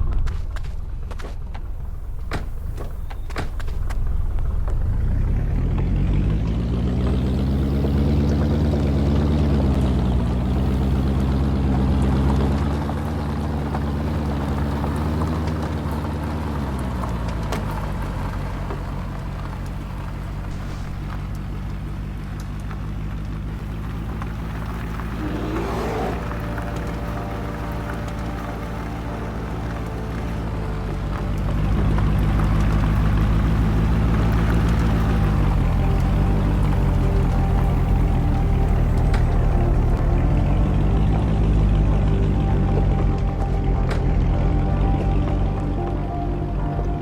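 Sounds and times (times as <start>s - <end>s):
motor vehicle engine revving: 0.0s - 47.0s.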